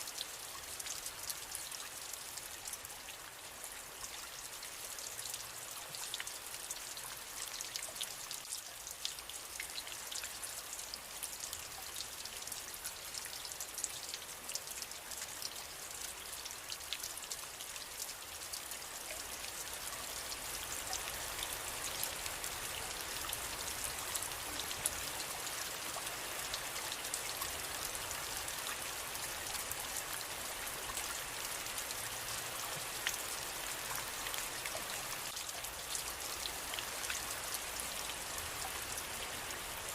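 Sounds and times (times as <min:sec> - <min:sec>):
rain falling: 0:00.0 - 0:39.9
raindrops ticking on a surface: 0:00.0 - 0:39.9.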